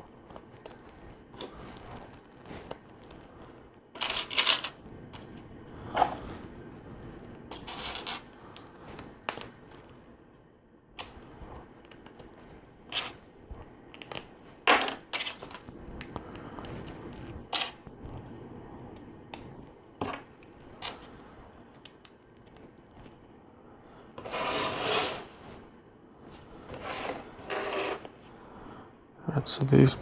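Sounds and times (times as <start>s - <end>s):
pieces scraping on a table: 4.0s - 4.8s, 7.5s - 8.3s, 12.9s - 13.2s, 14.1s - 15.7s, 16.8s - 17.8s, 24.2s - 25.4s, 26.7s - 28.2s.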